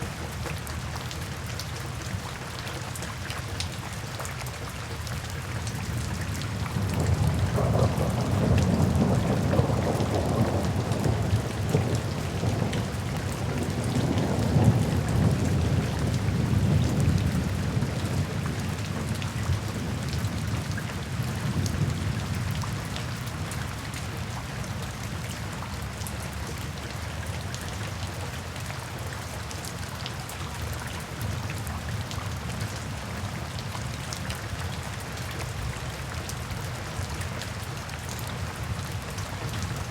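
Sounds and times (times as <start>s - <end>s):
steady rain: 0.0s - 39.9s
rolling thunder: 6.7s - 18.6s.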